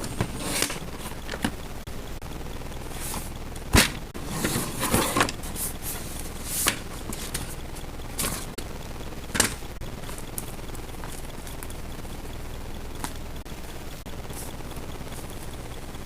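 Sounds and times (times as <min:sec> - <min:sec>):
rustling and scraping: 0:00.0 - 0:01.6, 0:02.9 - 0:08.6.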